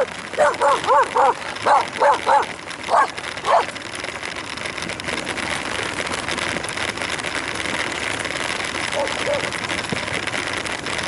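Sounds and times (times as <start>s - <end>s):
bicycle tyres rolling on gravel: 0.0s - 11.0s.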